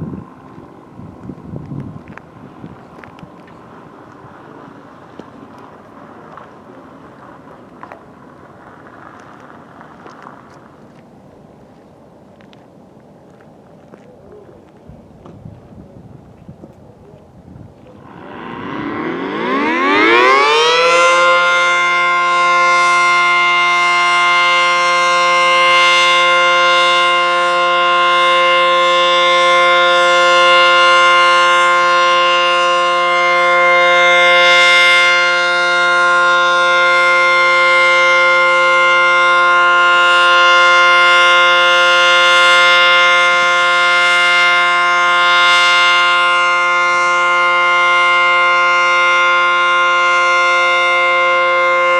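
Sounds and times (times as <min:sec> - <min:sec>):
warning siren winding up: 0:18.0 - 0:51.9.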